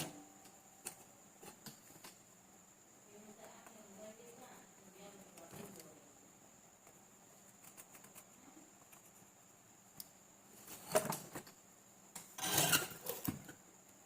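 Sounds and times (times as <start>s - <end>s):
hands rubbing electronic parts: 6.8s - 9.6s.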